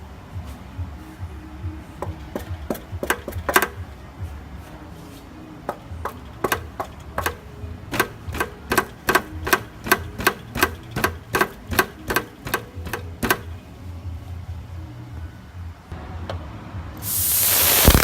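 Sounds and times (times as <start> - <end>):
sharp metallic knocks from exhaust: 2.0 - 3.8, 6.0 - 13.5.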